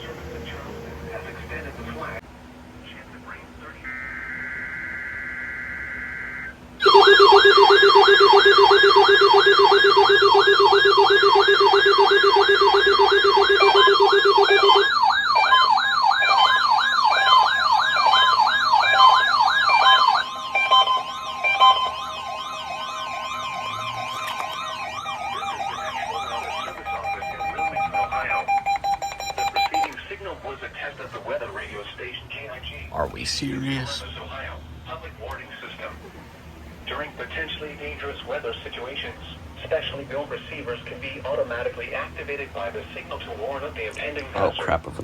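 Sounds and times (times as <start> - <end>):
radio data burst: 3.6 - 8.0
alarm beeping: 3.8 - 30.0
steady alarm tone: 3.8 - 30.0
rising and falling siren wail: 3.9 - 29.8.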